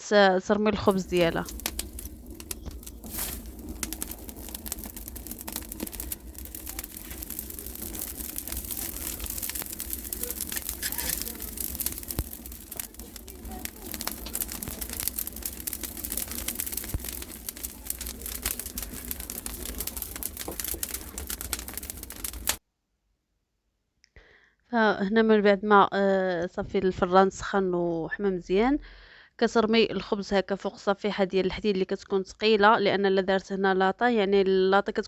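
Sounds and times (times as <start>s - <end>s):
wood fire crackling: 0.8s - 22.6s.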